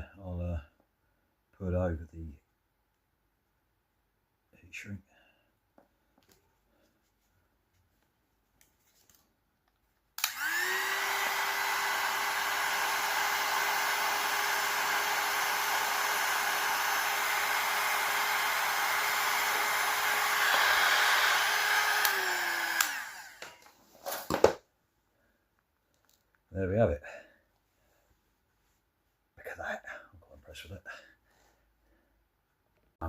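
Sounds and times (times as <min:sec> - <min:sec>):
heat gun switch click: 0:10.2 - 0:10.6, 0:21.9 - 0:23.0
heat gun fan whining: 0:10.2 - 0:23.7.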